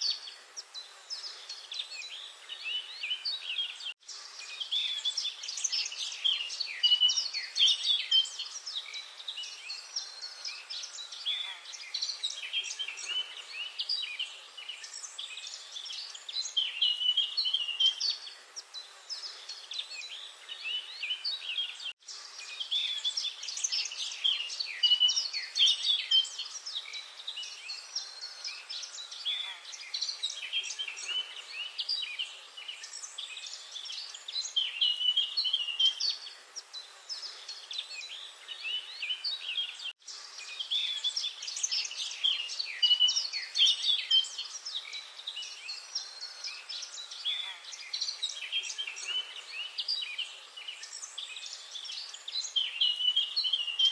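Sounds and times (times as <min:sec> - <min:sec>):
small birds chirping: 0:00.0 - 0:53.9.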